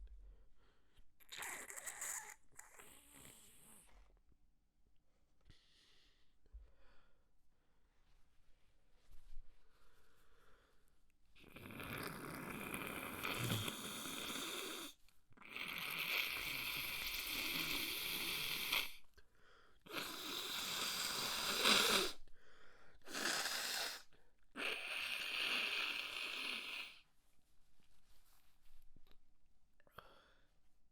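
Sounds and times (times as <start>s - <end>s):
person blowing nose: 19.9s - 22.2s, 23.1s - 24.0s.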